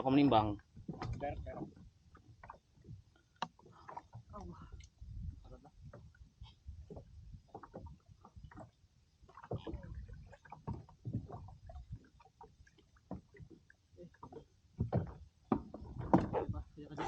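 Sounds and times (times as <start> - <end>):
water splashing: 0.9 - 17.0
kayak knocks: 14.3 - 16.6.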